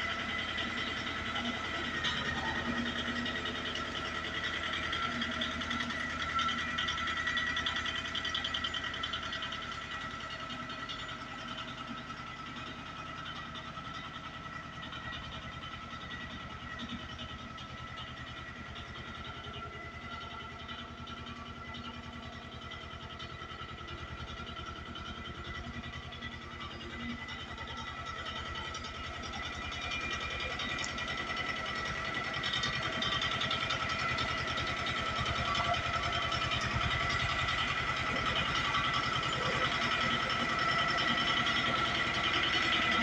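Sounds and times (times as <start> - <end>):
engine running steadily: 0.0 - 43.0.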